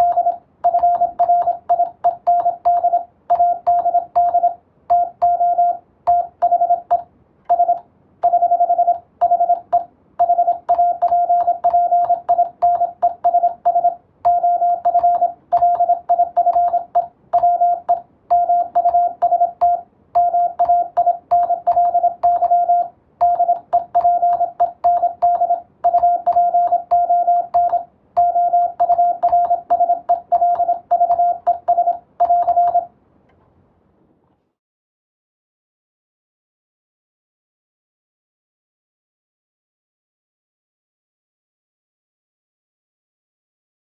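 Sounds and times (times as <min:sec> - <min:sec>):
morse code tone: 0:00.0 - 0:32.9.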